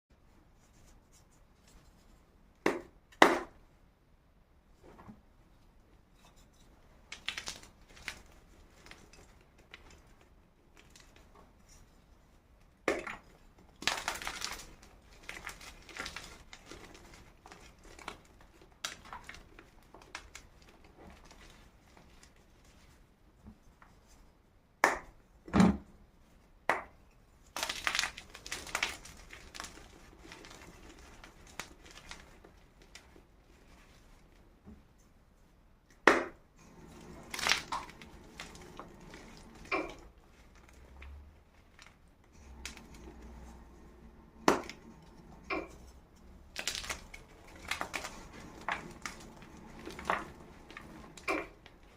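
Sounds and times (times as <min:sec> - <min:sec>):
chalk blocks crunching: 0:06.5 - 0:11.9, 0:13.6 - 0:22.4, 0:27.4 - 0:34.2, 0:36.7 - 0:51.9.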